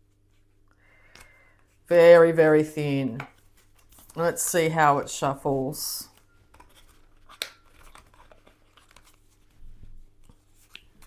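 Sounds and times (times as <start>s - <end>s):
cards and paper rustling: 3.1s - 4.5s, 6.0s - 11.0s.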